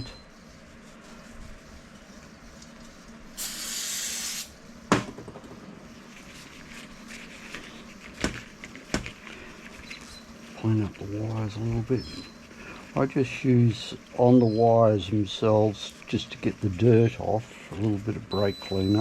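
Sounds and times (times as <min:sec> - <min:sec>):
aerosol spray burst: 0:03.4 - 0:04.5.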